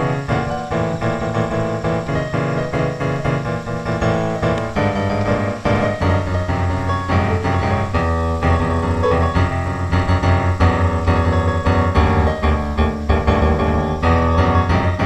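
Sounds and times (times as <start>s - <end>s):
piano instrumental music: 0.0s - 15.0s
steady bass line: 3.5s - 15.0s.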